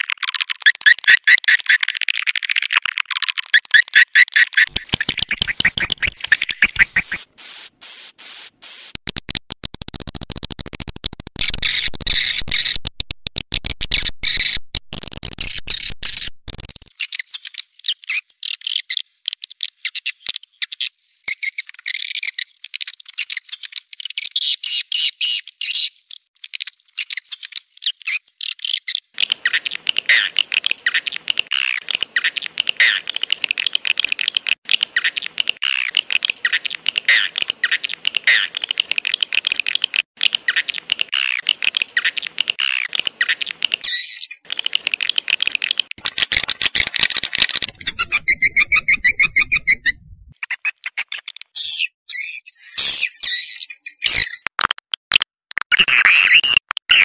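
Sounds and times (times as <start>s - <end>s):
swiftlets twittering and chirping: 4.6s - 9.0s, 15.2s - 16.9s, 40.2s - 52.3s
rapid sharp clicks: 4.7s - 7.3s, 8.6s - 16.9s, 29.2s - 43.8s, 44.5s - 50.5s.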